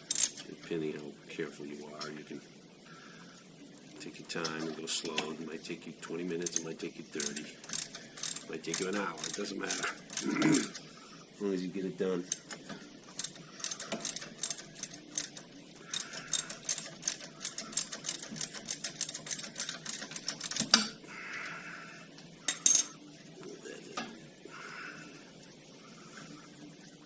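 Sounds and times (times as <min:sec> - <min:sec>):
ratchet wrench clicking: 0:00.1 - 0:00.3, 0:06.4 - 0:10.8, 0:13.2 - 0:20.8
handling of parts: 0:22.5 - 0:23.0.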